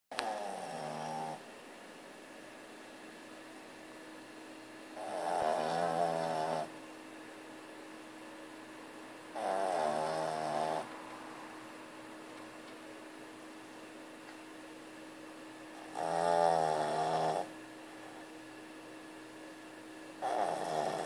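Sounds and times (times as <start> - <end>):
dog snoring: 0.1 - 1.5, 5.0 - 6.8, 9.3 - 10.9, 15.8 - 18.2, 20.2 - 21.0.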